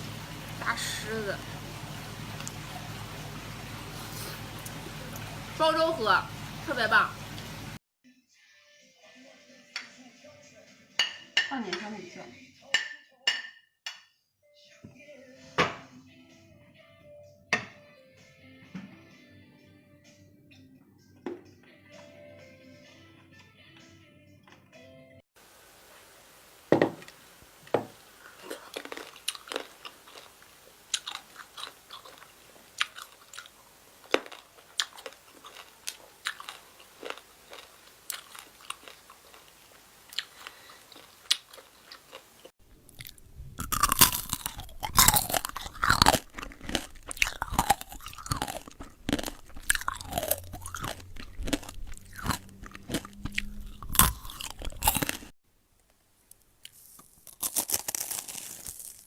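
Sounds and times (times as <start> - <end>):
person chewing and crunching: 28.2 - 55.4, 56.6 - 59.0.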